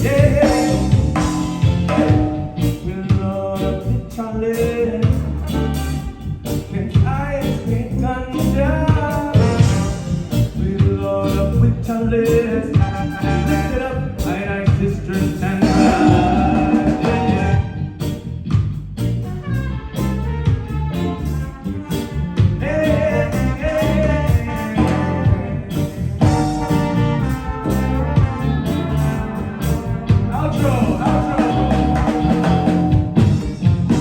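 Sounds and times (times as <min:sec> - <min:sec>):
lead singer singing: 0:00.0 - 0:01.6, 0:06.6 - 0:17.8, 0:22.6 - 0:26.8, 0:30.3 - 0:33.2
horn section: 0:00.0 - 0:03.0, 0:04.5 - 0:07.0, 0:08.9 - 0:11.6, 0:12.2 - 0:18.4, 0:19.0 - 0:34.0
live reggae band playing: 0:00.0 - 0:34.0.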